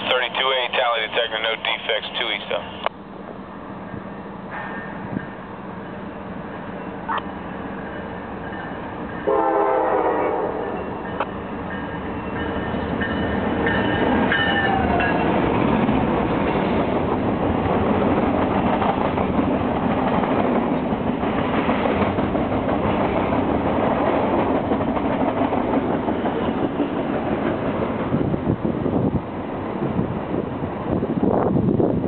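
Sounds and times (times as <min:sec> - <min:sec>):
train wheels rumbling on rails: 0:03.6 - 0:32.0
train horn: 0:09.2 - 0:11.0.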